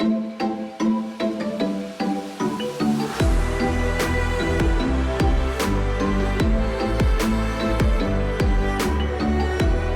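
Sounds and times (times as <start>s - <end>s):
electronic music with heavy bass: 1.0s - 9.9s.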